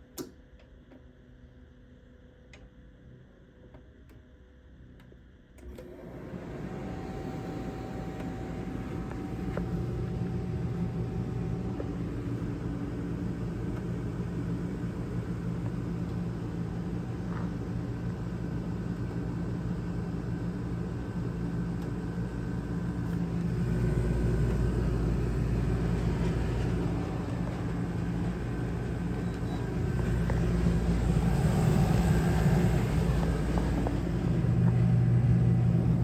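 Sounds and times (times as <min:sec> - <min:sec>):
heat pump humming: 0:05.6 - 0:36.0.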